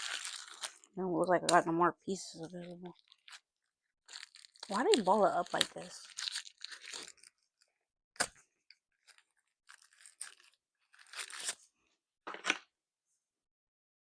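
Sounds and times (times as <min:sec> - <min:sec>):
packaging crinkling: 0:00.0 - 0:01.0, 0:02.5 - 0:03.5, 0:04.1 - 0:07.6, 0:09.0 - 0:11.6.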